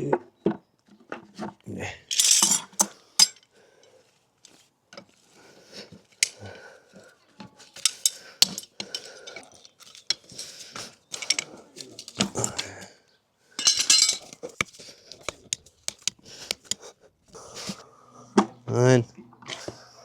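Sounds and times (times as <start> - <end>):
metal tools clinking: 2.1 - 3.5, 6.1 - 6.6, 7.6 - 12.8, 13.6 - 16.8.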